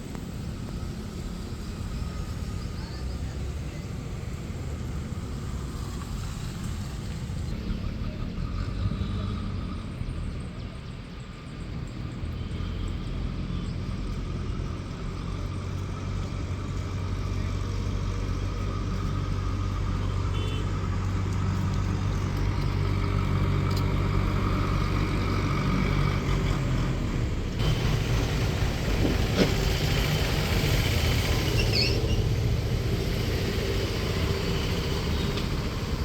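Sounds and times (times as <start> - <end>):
vehicle engine humming: 0.0 - 36.0.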